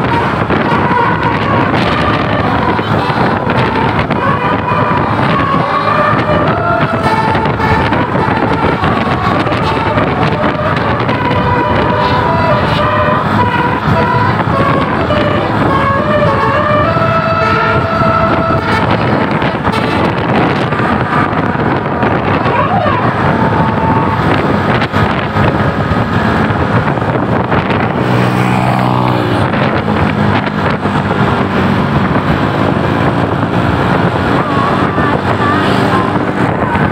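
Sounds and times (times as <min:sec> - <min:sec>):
bus going by: 0:00.0 - 0:36.9
wind buffeting microphone: 0:00.0 - 0:36.9
musical horn chord: 0:00.7 - 0:20.2.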